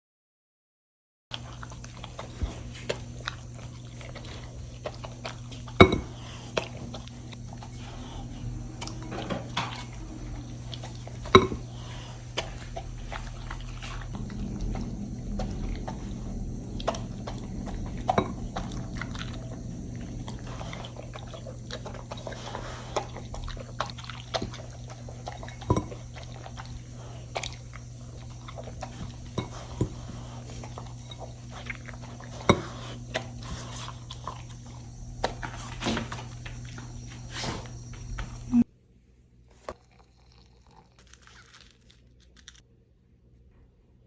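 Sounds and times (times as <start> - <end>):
low hum: 2.9 - 39.1
utensils tapping dishes: 5.8 - 6.2, 11.3 - 11.7
liquid pouring and dripping: 39.7 - 41.9.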